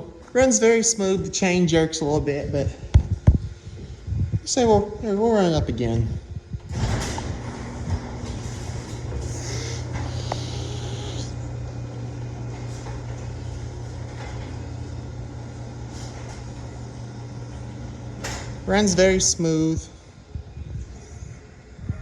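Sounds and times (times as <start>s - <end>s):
garage door opener motor hum: 6.6s - 18.9s.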